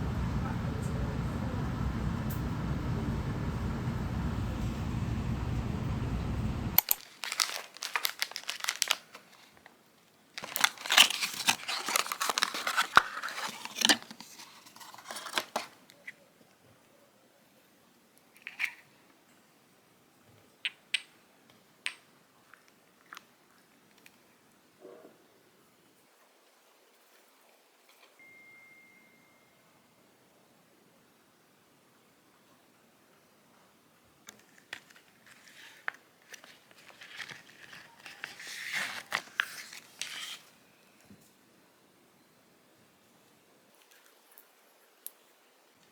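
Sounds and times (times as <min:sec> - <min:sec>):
packaging crinkling and rustling: 0:06.8 - 0:16.0, 0:34.3 - 0:40.6.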